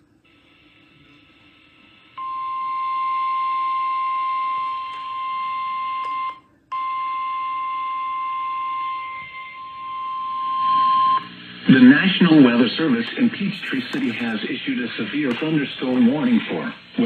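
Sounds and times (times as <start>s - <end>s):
radio hiss: 0.0s - 2.3s, 8.7s - 17.0s.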